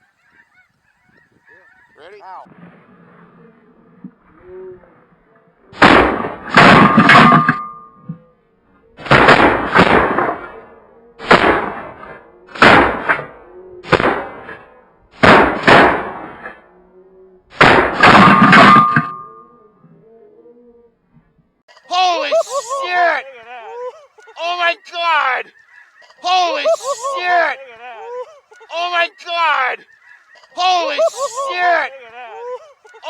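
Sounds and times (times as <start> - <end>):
shotgun shots: 5.8 - 7.6, 9.0 - 10.6, 11.2 - 13.3, 13.9 - 16.6, 17.5 - 19.3.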